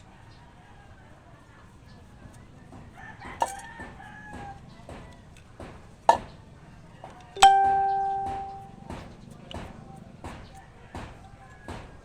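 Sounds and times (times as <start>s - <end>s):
rooster crowing: 2.9s - 4.8s
ringing metal strike: 7.4s - 9.0s.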